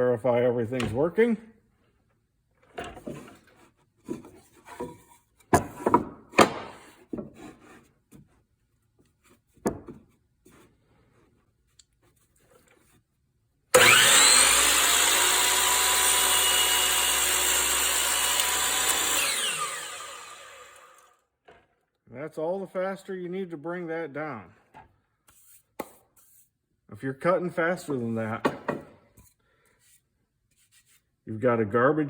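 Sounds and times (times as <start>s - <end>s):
saw blade cutting wood: 13.8s - 21.1s
miter saw motor whining: 13.8s - 21.2s
saw handling knocks and clicks: 28.4s - 29.0s.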